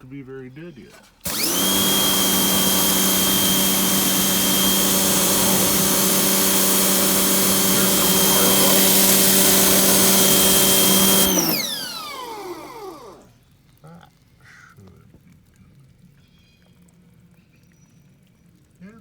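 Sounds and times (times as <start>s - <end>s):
pressure washer motor hum: 1.2s - 13.3s
water spray hissing: 1.3s - 12.9s.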